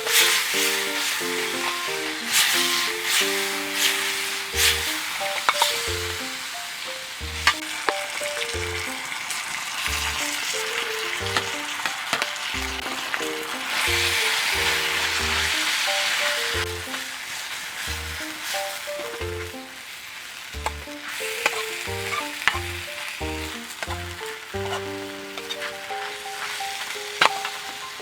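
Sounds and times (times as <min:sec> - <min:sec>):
food sizzling in a wok: 0:00.0 - 0:28.0
plucked melody with bass: 0:04.6 - 0:06.3, 0:07.2 - 0:07.8, 0:08.4 - 0:09.0, 0:09.9 - 0:10.4, 0:11.2 - 0:11.6, 0:12.6 - 0:15.7, 0:16.6 - 0:17.0, 0:17.9 - 0:18.4, 0:19.0 - 0:19.6, 0:20.6 - 0:21.1, 0:21.8 - 0:25.5.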